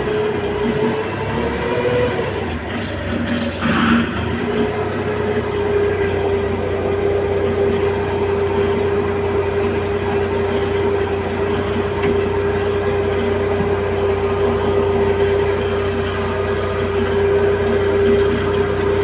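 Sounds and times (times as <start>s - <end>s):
heavy equipment engine running: 0.0s - 19.0s.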